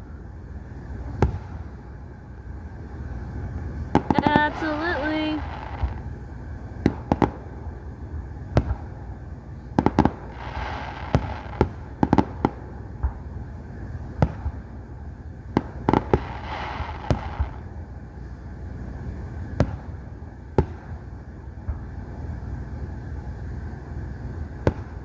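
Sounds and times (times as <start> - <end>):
fireworks exploding: 1.0 - 2.0, 2.9 - 14.8, 15.4 - 17.8, 19.5 - 22.0, 24.2 - 25.0
fireworks hiss: 4.0 - 6.2, 9.7 - 12.0, 15.8 - 18.5.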